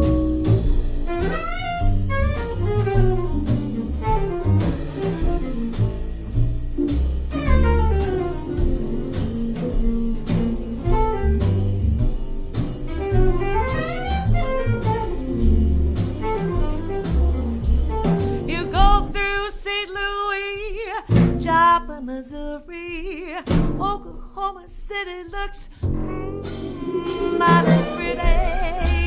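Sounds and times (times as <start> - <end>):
upright bass line: 0.0 - 19.2, 21.1 - 21.8, 25.9 - 29.0
drums: 0.0 - 29.0.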